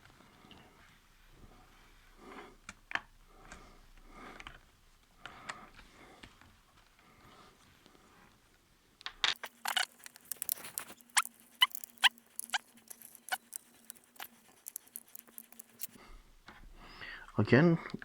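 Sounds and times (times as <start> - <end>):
screws driven with clicks and squeaks: 9.3 - 16.0.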